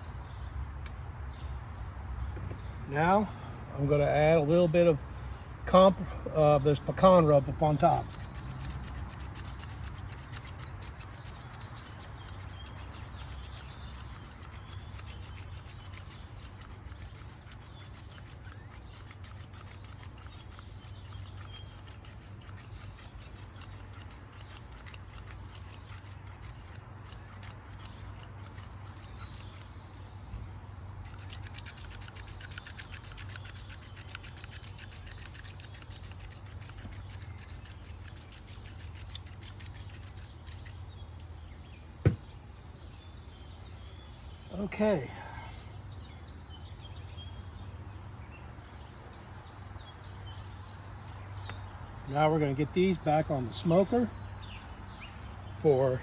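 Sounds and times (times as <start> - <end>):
shaker patter of fine clicks: 7.9 - 30.0, 31.0 - 40.8.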